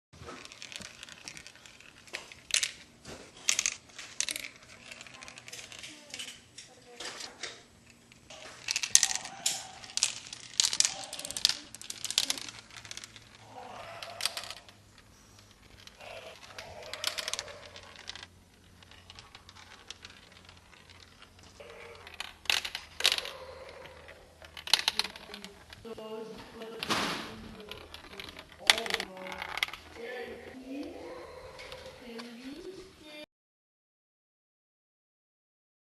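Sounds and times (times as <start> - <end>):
glass marbles clicking and rattling: 0.3 - 6.7, 7.9 - 32.0.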